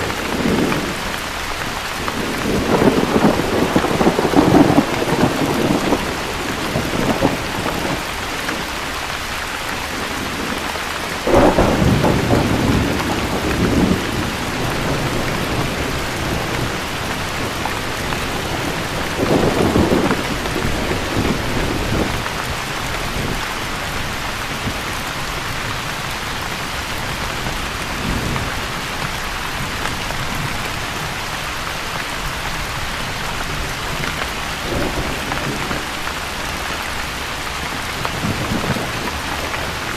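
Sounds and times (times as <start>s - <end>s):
rumbles of thunder: 0.0s - 39.9s
steady rain falling: 0.0s - 39.9s.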